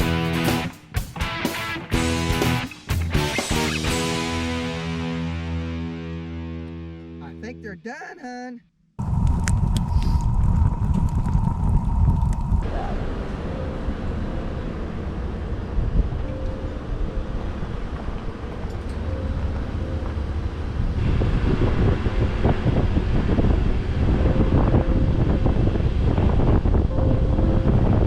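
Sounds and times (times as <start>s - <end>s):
wind on microphone: 9.0s - 14.3s, 15.1s - 16.3s, 20.6s - 28.0s
vehicle road rumble: 9.0s - 28.0s.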